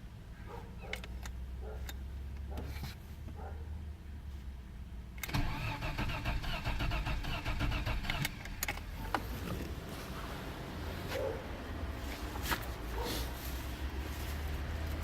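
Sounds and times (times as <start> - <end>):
car engine cranking and running: 5.2 - 11.1.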